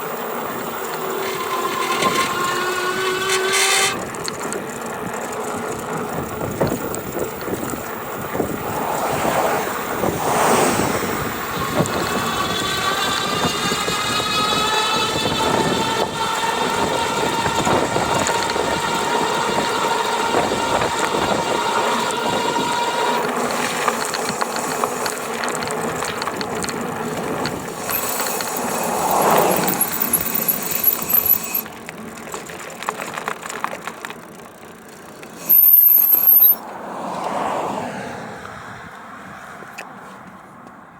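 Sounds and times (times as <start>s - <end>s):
electric motor whining: 0.0s - 32.0s, 34.8s - 36.6s
mechanical and wind noise: 0.0s - 36.7s
short high-pitched beep: 35.5s - 36.6s.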